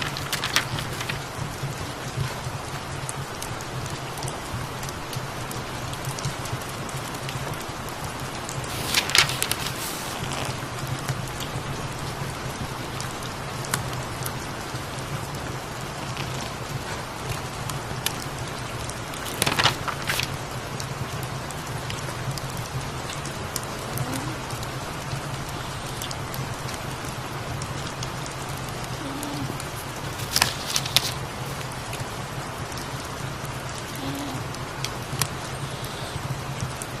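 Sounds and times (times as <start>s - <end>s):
book page turning: 0.0s - 1.3s, 8.7s - 10.6s, 19.0s - 20.4s, 29.0s - 31.6s
crackling fireplace: 0.0s - 37.0s
steady rain: 0.0s - 37.0s
cat purring: 8.7s - 10.7s, 28.9s - 31.6s.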